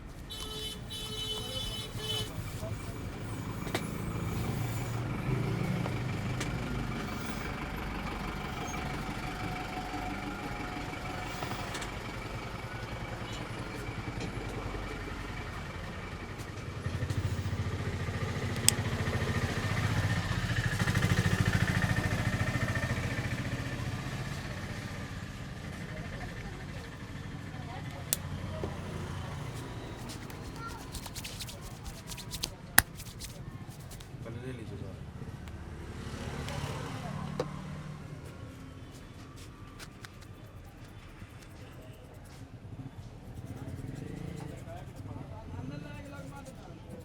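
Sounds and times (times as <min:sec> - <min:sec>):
vehicle engine rumble: 0:00.8 - 0:47.0
sharp click: 0:30.0 - 0:34.1.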